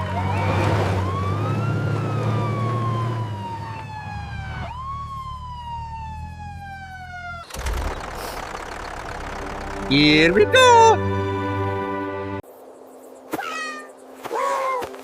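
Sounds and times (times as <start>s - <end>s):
police siren wailing: 0.0s - 7.6s, 9.0s - 12.4s
low engine rumble: 3.9s - 11.8s.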